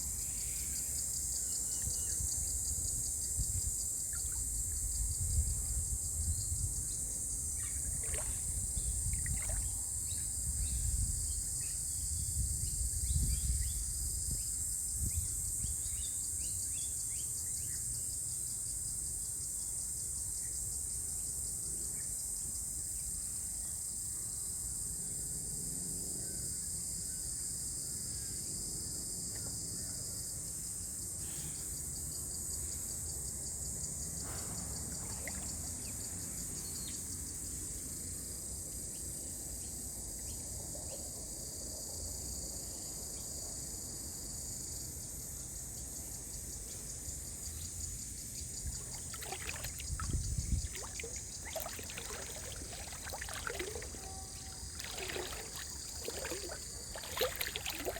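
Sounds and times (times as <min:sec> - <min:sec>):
insects chorus: 0:00.0 - 0:57.9
water splashing and trickling: 0:06.7 - 0:10.7, 0:34.4 - 0:36.6, 0:48.4 - 0:57.9.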